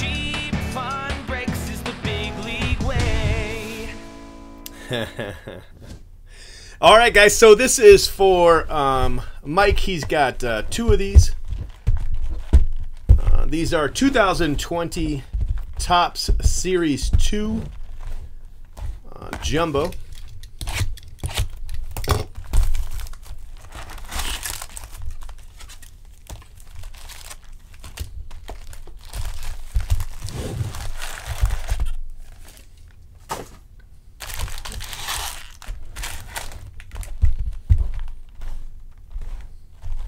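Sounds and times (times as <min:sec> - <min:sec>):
plastic wrapping crinkling and tearing: 0:08.0 - 0:15.8, 0:17.4 - 0:33.0, 0:34.2 - 0:38.3.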